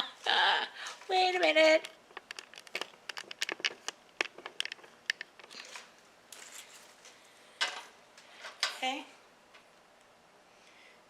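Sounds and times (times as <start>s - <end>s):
small clicks and crinkles: 0.9s - 7.3s.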